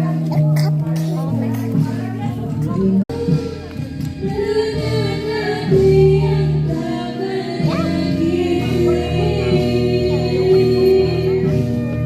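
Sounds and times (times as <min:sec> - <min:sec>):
background music: 0:00.0 - 0:12.0
person singing: 0:03.1 - 0:11.8.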